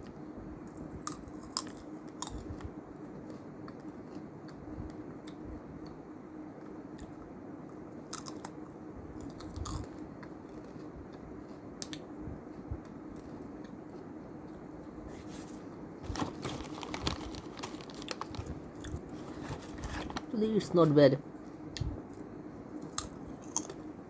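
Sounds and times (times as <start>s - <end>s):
chewing and crunching crisps: 0.7s - 4.6s, 8.0s - 14.8s, 15.6s - 20.4s, 22.1s - 23.9s.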